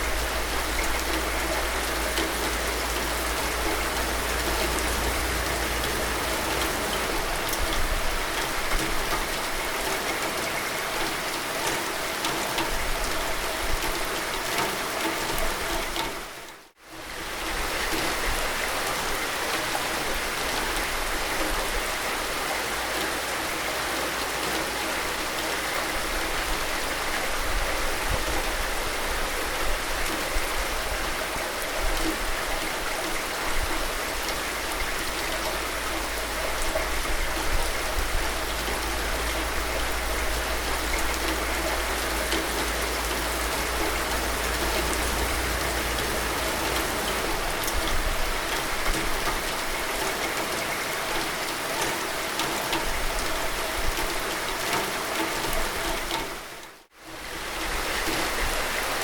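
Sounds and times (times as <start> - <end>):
low rumble: 0.0 - 9.1, 35.3 - 49.2
steady rainfall hiss: 0.0 - 59.0.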